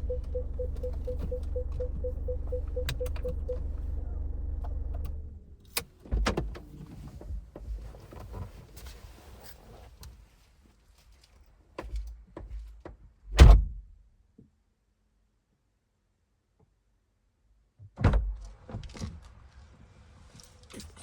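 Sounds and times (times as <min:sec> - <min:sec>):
car engine hum: 0:00.0 - 0:05.8
car door shutting: 0:00.1 - 0:04.0.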